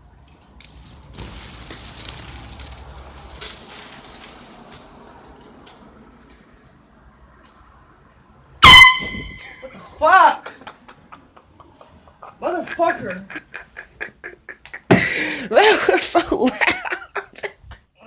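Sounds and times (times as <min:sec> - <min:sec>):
compressed-air horn blast: 0:08.6 - 0:09.7.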